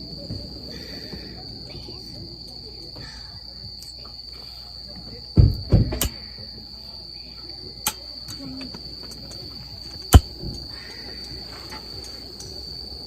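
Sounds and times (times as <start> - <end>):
insects chirping: 0.0 - 13.0.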